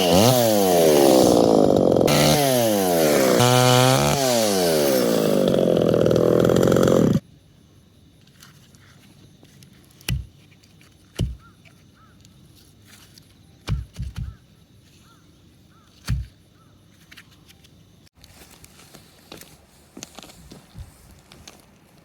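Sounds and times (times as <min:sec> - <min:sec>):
dull wooden knocks of logs: 0:10.1 - 0:10.3, 0:11.1 - 0:11.5, 0:13.6 - 0:14.4, 0:16.0 - 0:16.4.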